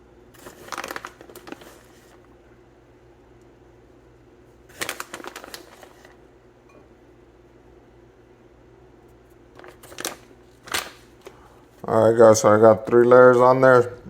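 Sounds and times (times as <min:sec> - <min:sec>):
low background hum: 0:00.0 - 0:14.0
rustling and crinkling: 0:00.4 - 0:02.3, 0:04.7 - 0:06.2, 0:09.5 - 0:11.4.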